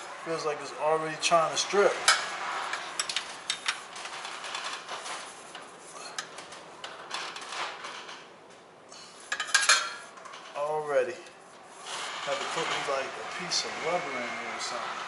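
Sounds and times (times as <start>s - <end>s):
steady background hiss: 0.0s - 4.0s.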